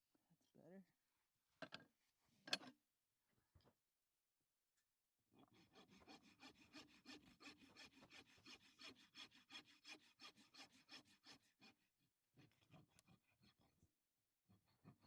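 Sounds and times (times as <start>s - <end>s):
rasp scraping a hoof: 5.4s - 13.8s.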